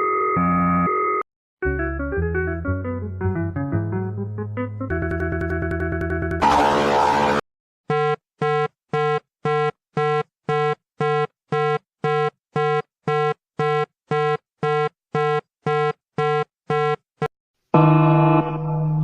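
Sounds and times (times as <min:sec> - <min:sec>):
burst of harsh static: 0:06.4 - 0:07.4
electronic alarm beeping: 0:17.8 - 0:19.0.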